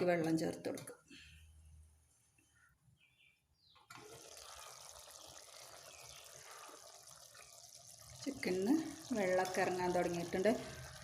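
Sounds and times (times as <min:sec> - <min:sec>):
food simmering in a pan: 0:04.0 - 0:11.0.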